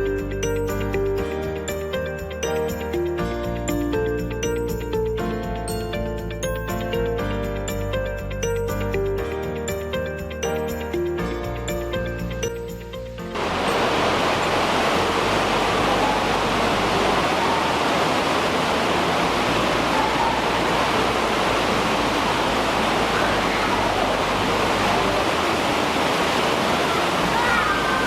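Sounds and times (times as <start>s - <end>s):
background music: 0.0s - 28.0s
waterfall rushing through gorge: 13.4s - 28.0s.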